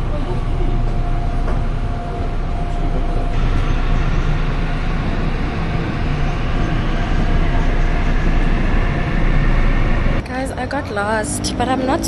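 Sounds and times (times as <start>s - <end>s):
rail running noise: 0.0s - 12.0s
vehicle rumble: 0.0s - 12.0s.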